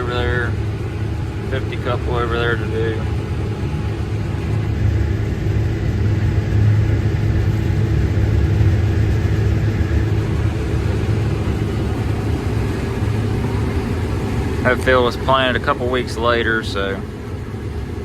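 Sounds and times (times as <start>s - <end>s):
combine harvester running: 0.0s - 18.0s.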